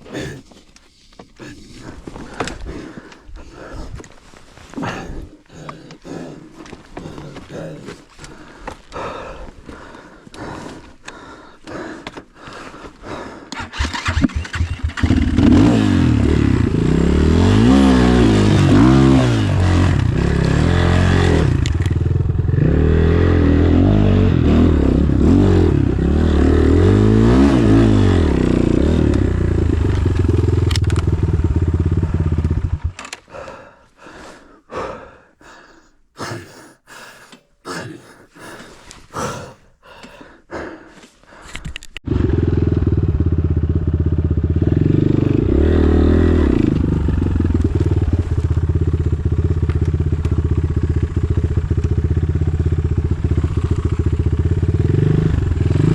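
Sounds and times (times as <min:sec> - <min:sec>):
motorcycle engine revving: 0:13.6 - 0:33.2, 0:42.0 - 0:55.9.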